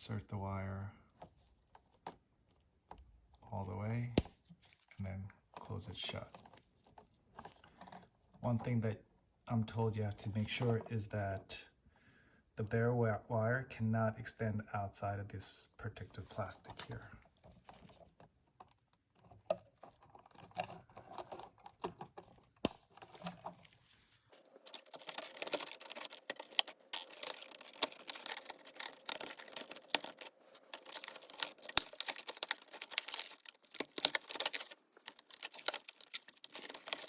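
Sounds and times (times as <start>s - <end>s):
electrical wires clicking and scraping: 15.5s - 37.0s.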